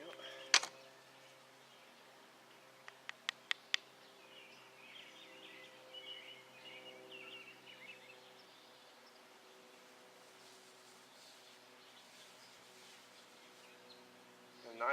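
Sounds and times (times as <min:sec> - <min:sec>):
sharp clicks: 0:02.8 - 0:03.9.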